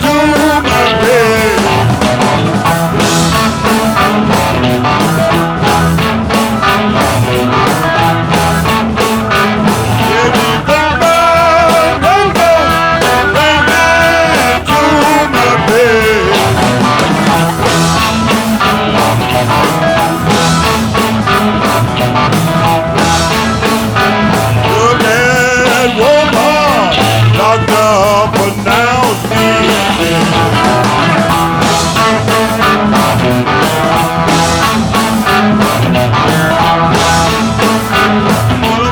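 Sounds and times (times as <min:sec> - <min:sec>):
person singing: 0:00.0 - 0:02.4, 0:09.7 - 0:17.5, 0:24.4 - 0:31.4, 0:37.5 - 0:38.9
rock music with guitar and drums: 0:00.0 - 0:38.9.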